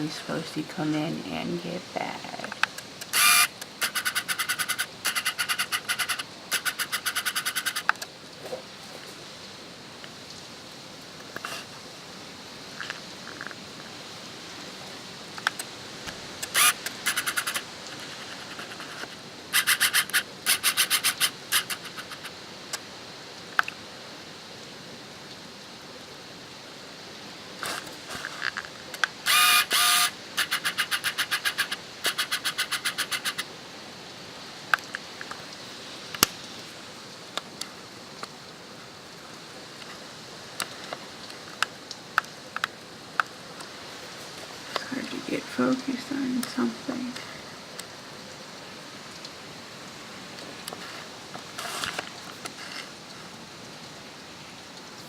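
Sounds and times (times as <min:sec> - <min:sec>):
wind hiss: 0:00.0 - 0:55.0
bird chattering calls: 0:19.6 - 0:22.3, 0:30.4 - 0:33.4.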